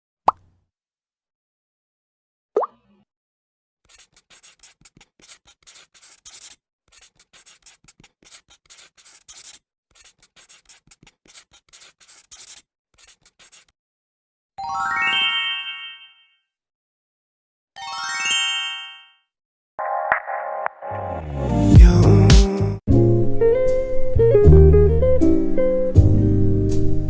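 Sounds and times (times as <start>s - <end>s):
pen writing on paper: 3.9s - 13.7s.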